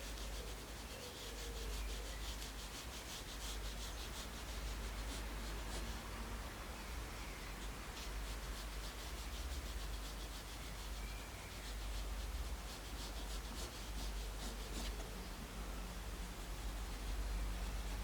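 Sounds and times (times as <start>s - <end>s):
pencil scratching on paper: 12.5s - 15.1s.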